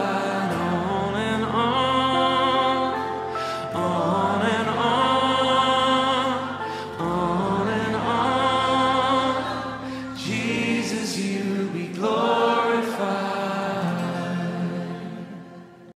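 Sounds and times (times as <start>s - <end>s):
wordless choir-like vocals: 0.0s - 15.9s
worship song chords: 0.0s - 15.9s.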